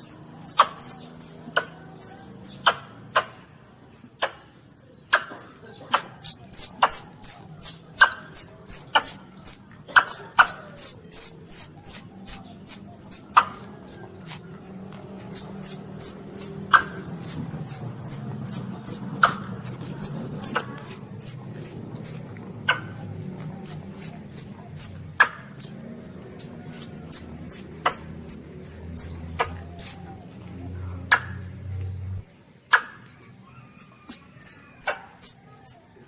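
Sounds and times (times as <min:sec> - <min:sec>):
baby civets squeaking: 0:00.0 - 0:02.9, 0:05.9 - 0:30.2, 0:33.4 - 0:36.0
low hum: 0:08.4 - 0:30.8.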